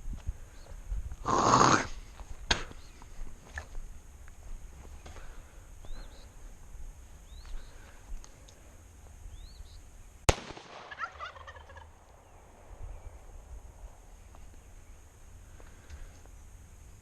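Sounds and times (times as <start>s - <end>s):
small bird chirps: 7.2s - 7.7s, 9.3s - 9.8s
pistol shot: 10.3s - 11.2s
turkey gobbling: 10.8s - 11.9s.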